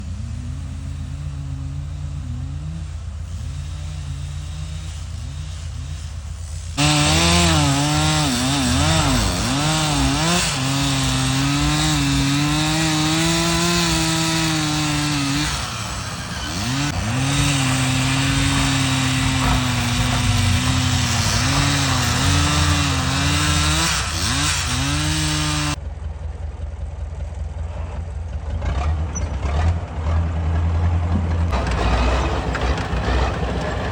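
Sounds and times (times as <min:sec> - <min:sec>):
chainsaw cutting timber: 0:03.2 - 0:25.8.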